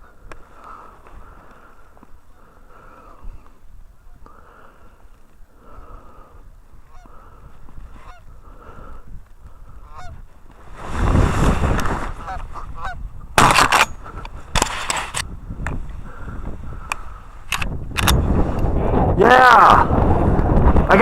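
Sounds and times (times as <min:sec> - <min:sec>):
geese honking: 0:06.9 - 0:07.4, 0:08.0 - 0:08.3, 0:09.8 - 0:10.2, 0:12.2 - 0:13.0
shotgun shots: 0:13.4 - 0:14.0.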